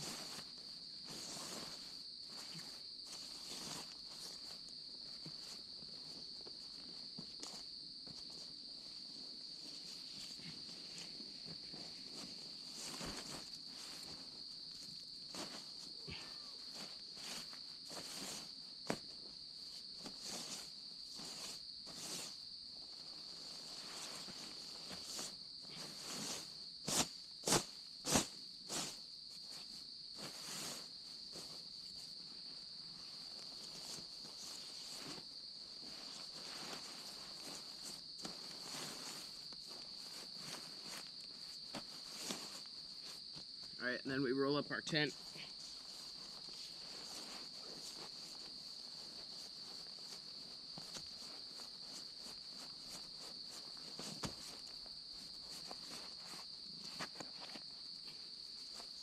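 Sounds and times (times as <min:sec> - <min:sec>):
tent fabric rustling: 0:00.0 - 0:43.8, 0:44.9 - 0:59.0
insect chorus: 0:00.0 - 0:59.0.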